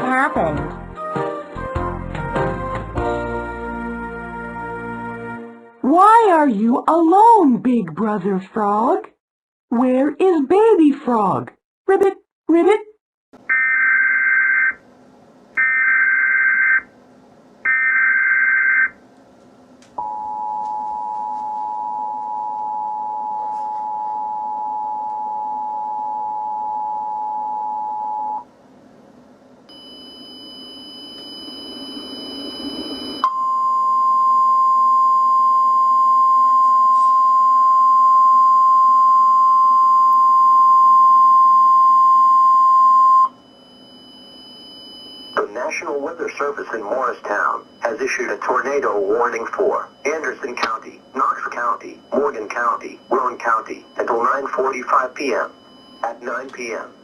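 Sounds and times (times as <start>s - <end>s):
steady warning alarm tone: 15.6s - 16.9s, 17.7s - 19.0s, 20.0s - 28.4s, 29.7s - 57.0s
two-tone attention signal: 29.7s - 45.5s
harsh data tones: 44.0s - 57.0s.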